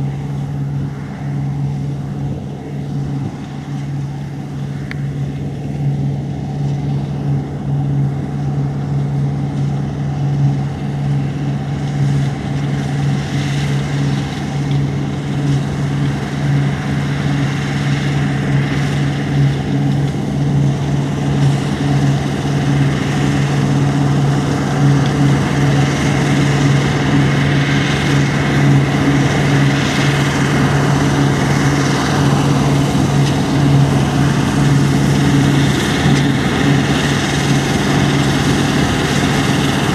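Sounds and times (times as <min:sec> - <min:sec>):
diesel engine hum: 0:00.0 - 0:39.9.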